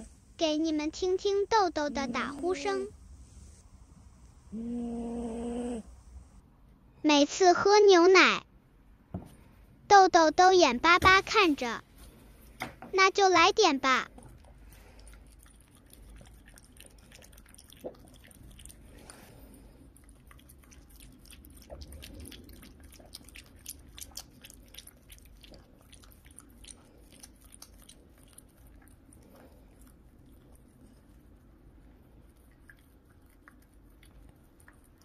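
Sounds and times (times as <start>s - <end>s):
dog lapping milk: 14.2s - 35.0s.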